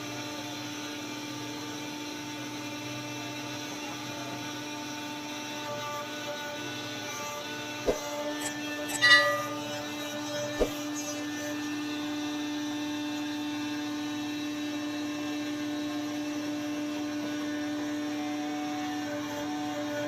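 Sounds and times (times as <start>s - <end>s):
machine humming: 7.9s - 11.4s.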